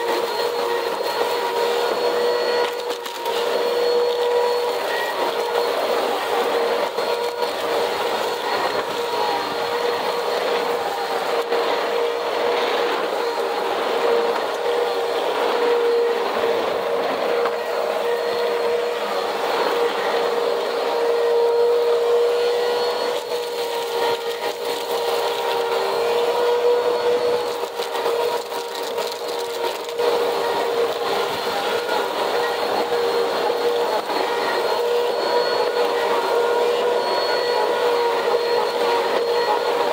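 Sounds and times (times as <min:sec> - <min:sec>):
vacuum cleaner motor whine: 0:00.0 - 0:39.9
debris rattling in vacuum: 0:22.1 - 0:35.0.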